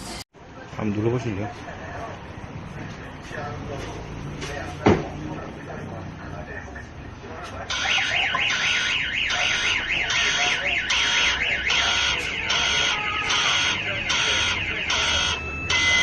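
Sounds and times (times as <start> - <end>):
car alarm siren: 7.7 - 16.0.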